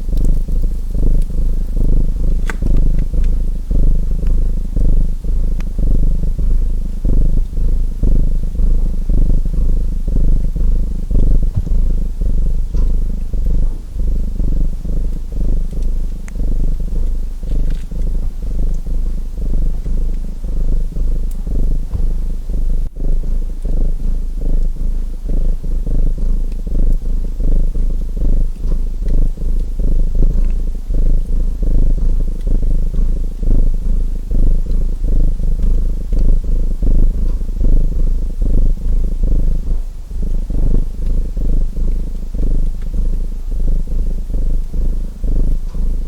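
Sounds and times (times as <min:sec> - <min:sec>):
cat purring: 0:00.0 - 0:46.0
wood fire crackling: 0:00.1 - 0:04.4.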